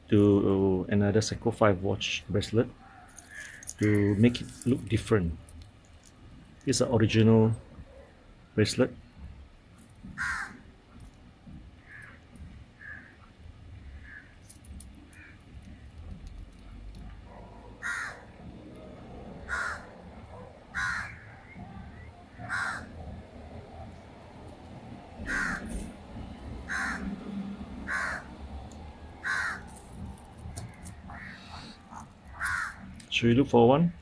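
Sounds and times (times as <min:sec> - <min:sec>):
low background noise: 0:00.0 - 0:34.0
bird calling: 0:02.8 - 0:04.3, 0:17.3 - 0:18.5, 0:19.3 - 0:24.0, 0:25.2 - 0:28.5, 0:29.1 - 0:29.8, 0:30.4 - 0:33.0.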